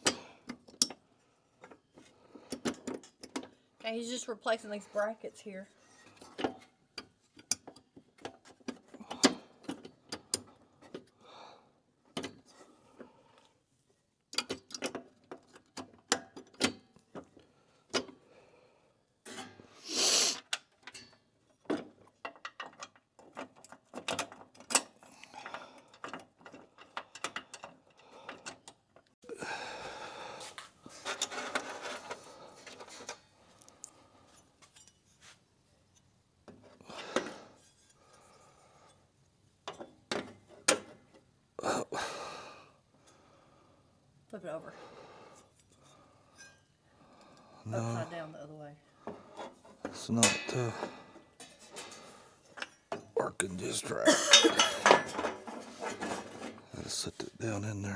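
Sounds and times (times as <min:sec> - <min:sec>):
hand tools clicking and clattering: 0:30.4 - 0:34.0, 0:49.4 - 0:53.1, 0:54.1 - 0:56.9.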